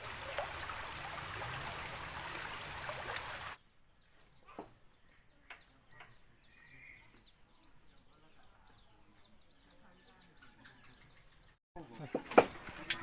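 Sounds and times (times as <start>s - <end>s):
bird chirping: 3.6s - 12.0s.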